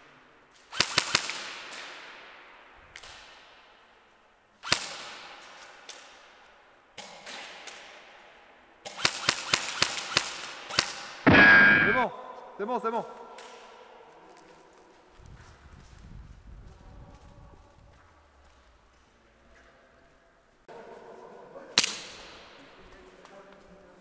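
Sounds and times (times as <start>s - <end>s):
airsoft guns firing: 0.7s - 2.4s, 8.8s - 12.1s.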